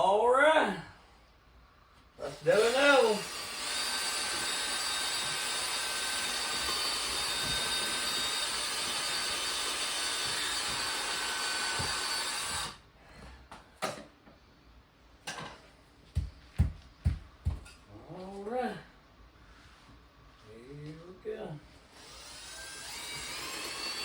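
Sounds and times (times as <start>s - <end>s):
electric drill boring into concrete: 2.3s - 12.8s, 22.0s - 24.0s.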